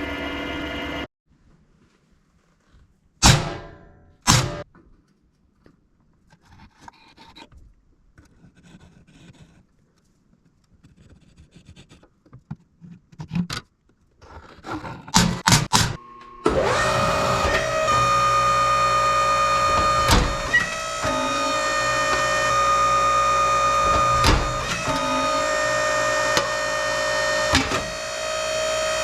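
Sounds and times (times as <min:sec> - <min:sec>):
motor whining: 0:00.0 - 0:01.1, 0:15.8 - 0:29.0
rubbing and scraping: 0:06.2 - 0:15.2.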